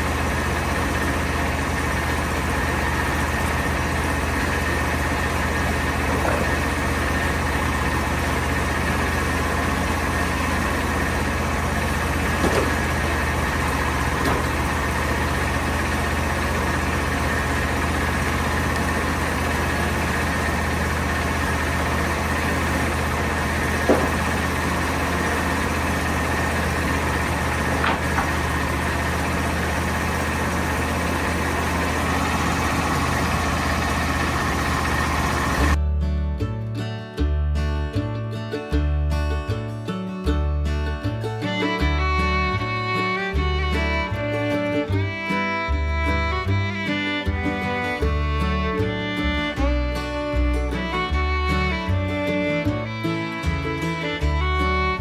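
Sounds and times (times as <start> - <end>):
engine idling: 0.0 - 55.0
short knocks: 12.0 - 15.8, 23.3 - 25.7, 27.4 - 28.7.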